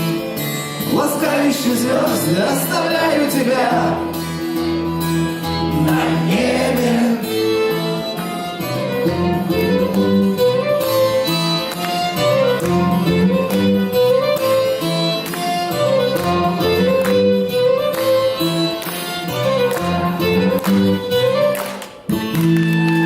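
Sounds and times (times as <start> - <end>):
live rock band playing: 0.0 - 23.0
violin melody: 0.0 - 23.0.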